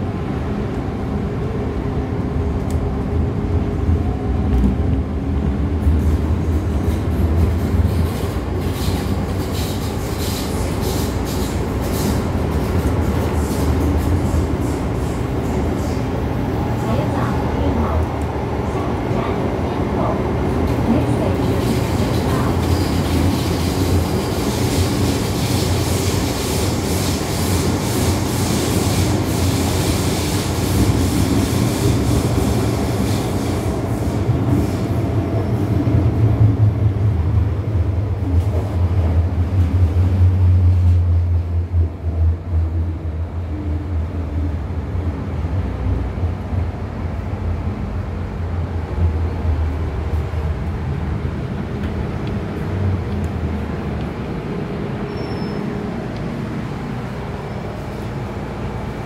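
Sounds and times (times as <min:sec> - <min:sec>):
train wheels rumbling on rail: 0:00.0 - 0:59.0.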